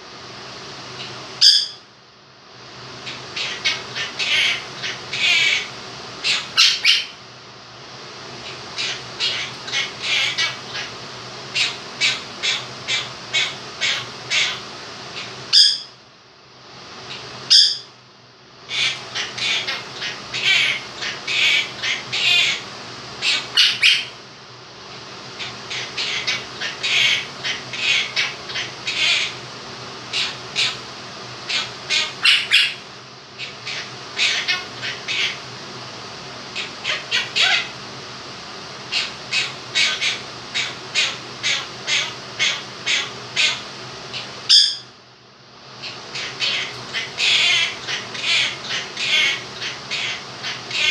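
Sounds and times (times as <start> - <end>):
electric fan whirring: 0.0 - 50.9
parrot squawking: 1.0 - 1.8, 3.1 - 7.2, 8.4 - 15.9, 17.1 - 17.9, 18.7 - 24.2, 25.4 - 29.4, 30.1 - 30.8, 31.5 - 35.4, 36.6 - 37.8, 38.9 - 44.9, 45.8 - 50.9.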